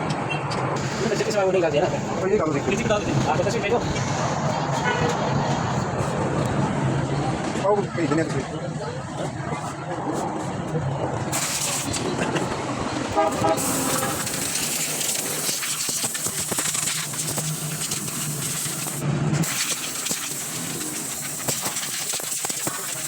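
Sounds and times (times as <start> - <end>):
loud steady hiss: 0.8 - 4.5, 11.3 - 12.2, 13.2 - 23.0.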